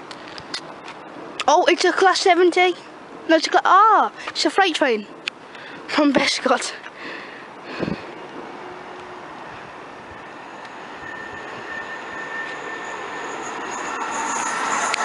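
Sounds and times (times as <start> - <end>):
thin high steady whine: 5.0 - 15.0
freight train running: 7.3 - 15.0.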